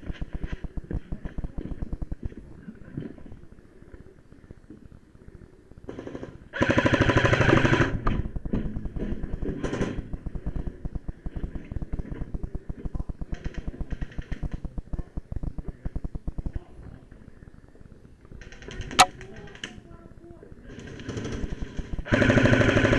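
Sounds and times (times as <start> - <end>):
airsoft gun rapid fire: 5.9 - 9.0, 20.8 - 22.9.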